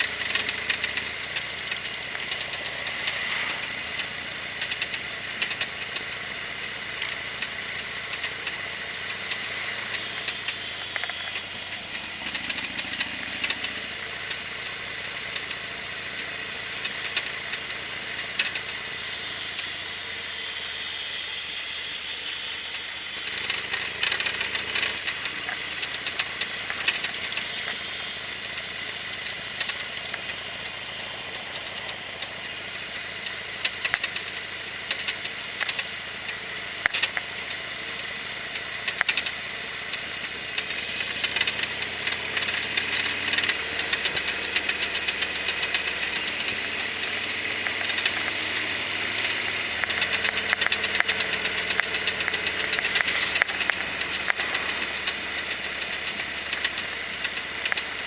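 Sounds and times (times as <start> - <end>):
motorcycle engine running: 0.0 - 58.0
mechanical rattling and clicking: 38.8 - 58.0.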